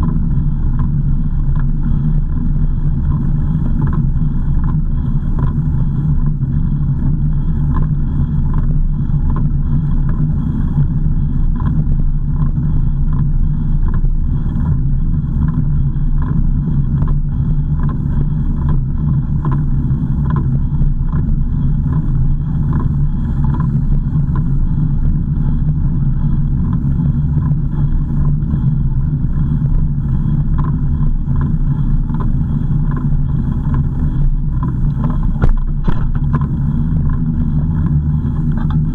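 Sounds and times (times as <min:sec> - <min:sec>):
car engine and road noise: 0:11.0 - 0:38.9.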